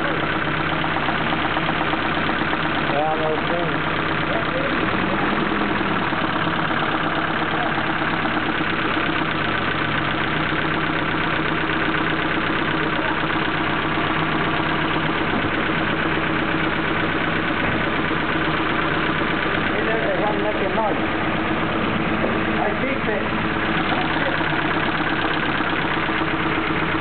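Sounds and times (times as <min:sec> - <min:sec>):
car engine idling: 0:00.0 - 0:27.0
fast even engine ticking: 0:00.0 - 0:27.0.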